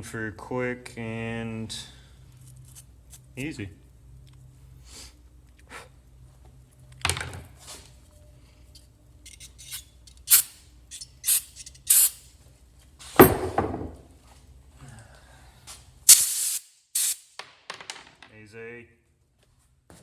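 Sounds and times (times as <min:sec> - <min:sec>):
metal parts clicking and clinking: 0:09.3 - 0:12.3
spraying hiss: 0:10.3 - 0:10.6, 0:11.3 - 0:12.2, 0:16.1 - 0:17.3
knocks on workbench: 0:13.2 - 0:14.0.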